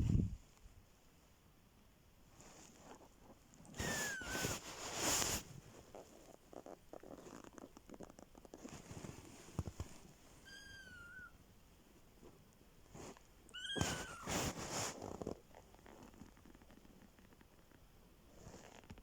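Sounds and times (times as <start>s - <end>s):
kitten mewing: 3.8s - 4.5s, 10.5s - 11.4s, 13.5s - 14.3s.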